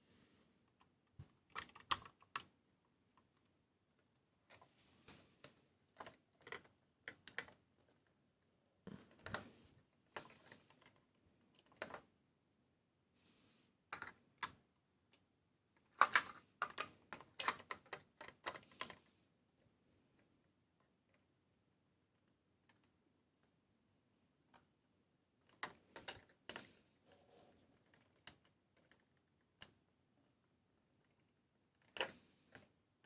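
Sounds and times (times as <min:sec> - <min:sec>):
plastic parts clicking and tapping: 0:00.7 - 0:08.2, 0:08.9 - 0:12.1, 0:13.9 - 0:19.1, 0:25.4 - 0:33.0
soft rustle: 0:04.6 - 0:05.7.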